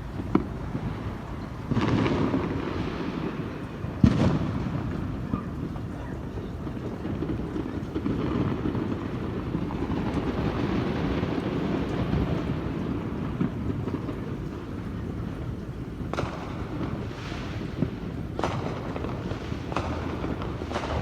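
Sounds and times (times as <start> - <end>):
wind rumbling on microphone: 0.0 - 21.0
distant firecracker pops: 0.2 - 6.0, 15.9 - 21.0.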